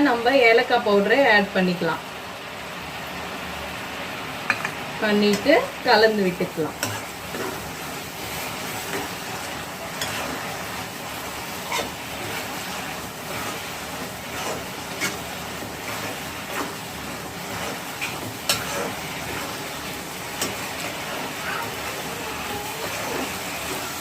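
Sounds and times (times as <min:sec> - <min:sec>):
sizzling in a pan: 0:00.0 - 0:24.0
stirring tool scraping pan: 0:06.7 - 0:24.0.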